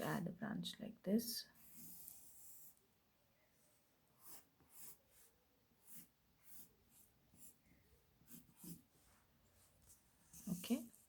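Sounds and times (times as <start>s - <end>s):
pencil scratching on paper: 1.5s - 2.8s, 4.2s - 7.6s, 8.2s - 11.0s.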